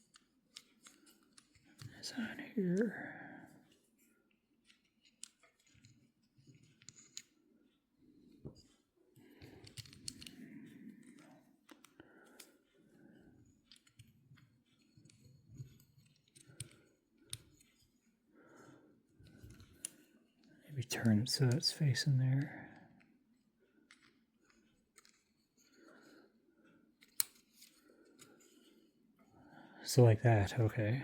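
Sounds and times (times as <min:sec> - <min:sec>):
small metal parts clicking: 0:00.0 - 0:01.9, 0:04.7 - 0:07.3, 0:09.4 - 0:10.4, 0:13.6 - 0:17.8, 0:23.9 - 0:25.8, 0:27.0 - 0:28.5.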